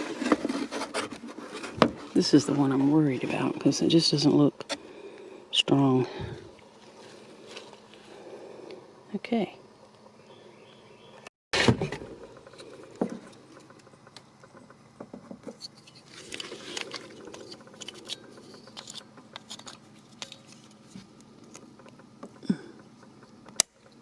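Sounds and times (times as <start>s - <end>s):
small plastic clicks and scraping: 12.4s - 24.0s.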